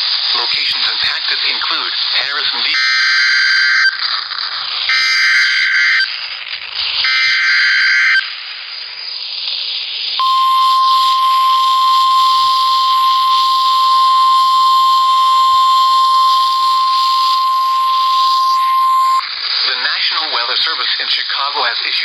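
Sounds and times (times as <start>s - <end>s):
radio hiss: 0.0s - 2.8s, 8.3s - 22.0s
steady warning alarm tone: 10.2s - 19.2s
warbling data tones: 10.2s - 19.2s.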